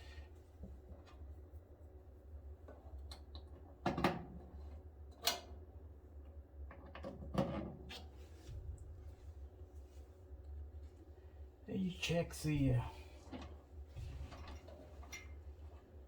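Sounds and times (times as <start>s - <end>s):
steady low hum: 8.2s - 16.0s.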